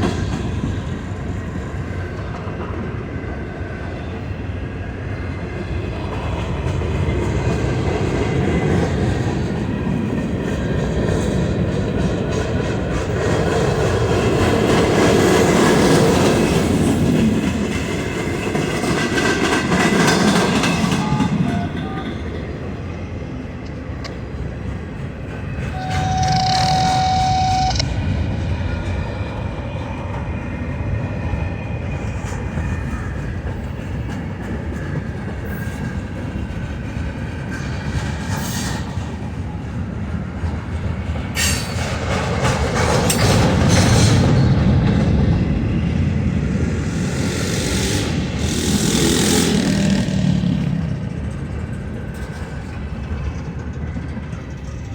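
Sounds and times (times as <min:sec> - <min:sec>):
train wheels clattering over rails: 0:05.9 - 0:22.9, 0:28.4 - 0:54.9
steady tone: 0:25.8 - 0:27.9.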